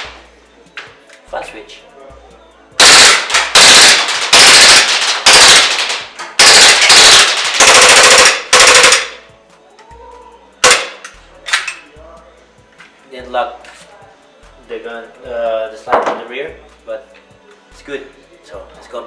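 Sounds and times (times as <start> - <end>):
airsoft pistol full auto bursts: 2.8 - 9.2.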